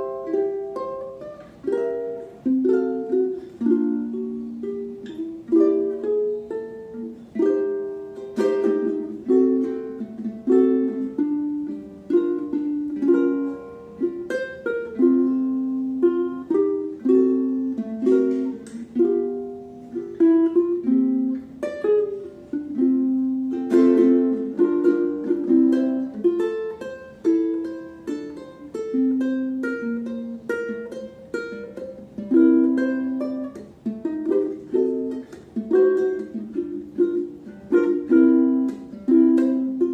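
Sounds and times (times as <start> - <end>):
ukulele played fingerstyle: 0.0 - 39.9.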